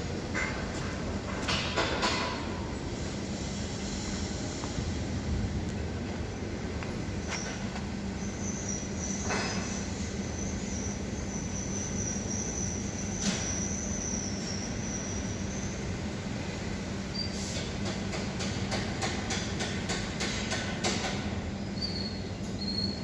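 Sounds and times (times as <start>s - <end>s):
high wavering squeal: 7.3s - 15.9s.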